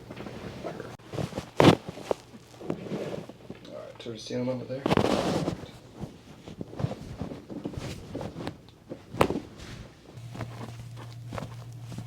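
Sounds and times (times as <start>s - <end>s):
soft shuffling steps: 0.0s - 12.0s
knocks of movement: 4.8s - 12.0s.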